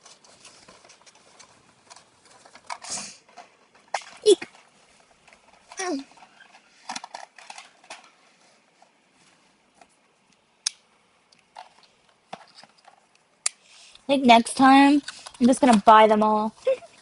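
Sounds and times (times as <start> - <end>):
plastic rustling: 0.0 - 10.2.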